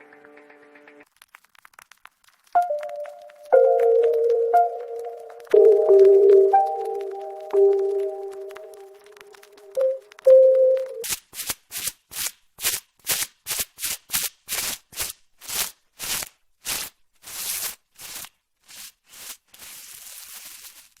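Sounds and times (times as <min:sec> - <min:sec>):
bubble wrap popping: 0:01.0 - 0:03.6, 0:06.6 - 0:21.0
musical chime: 0:02.6 - 0:11.0.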